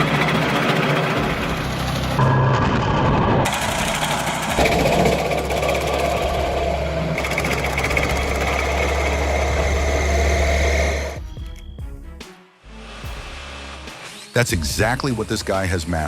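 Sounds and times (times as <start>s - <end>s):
wood-processing machine running: 0.0s - 11.2s.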